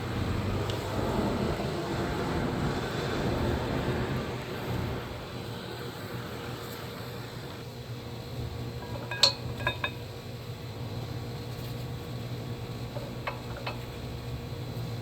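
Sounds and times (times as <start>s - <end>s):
low background hum: 0.0s - 15.0s.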